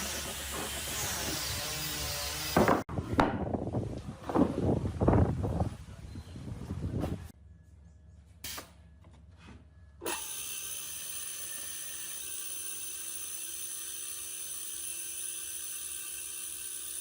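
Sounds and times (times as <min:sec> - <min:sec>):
electric power tool whining: 0:00.0 - 0:02.8, 0:10.0 - 0:17.0.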